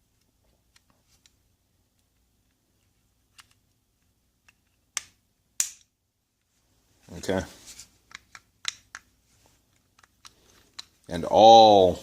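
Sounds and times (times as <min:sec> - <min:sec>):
small plastic parts clicking: 0:02.8 - 0:03.8, 0:08.1 - 0:09.1, 0:09.7 - 0:11.1.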